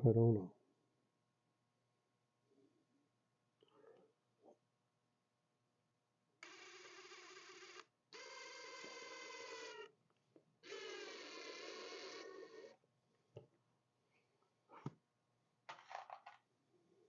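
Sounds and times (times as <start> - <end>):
power drill motor whining: 6.4 - 9.9, 10.6 - 12.8.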